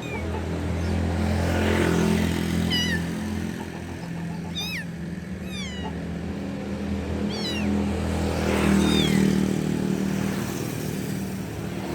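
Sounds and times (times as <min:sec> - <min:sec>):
kitten meowing: 0:00.0 - 0:01.0, 0:02.5 - 0:03.2, 0:04.4 - 0:06.0, 0:07.2 - 0:07.9, 0:08.8 - 0:09.3.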